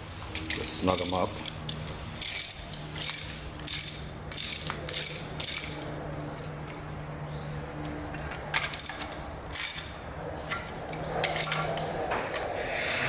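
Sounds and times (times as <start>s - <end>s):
wrench clicking on metal clamps: 0.3s - 6.0s, 8.3s - 11.9s.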